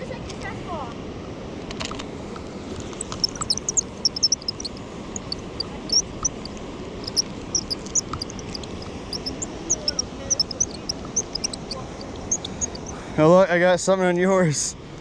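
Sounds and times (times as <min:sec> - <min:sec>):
high chirps from small animals: 0:03.0 - 0:13.0.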